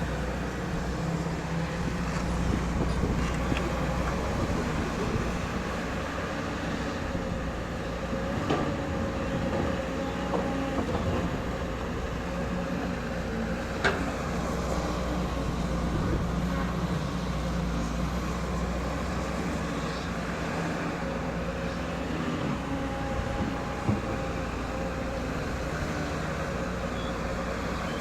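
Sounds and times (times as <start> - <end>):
excavator diesel engine running: 0.0 - 28.0.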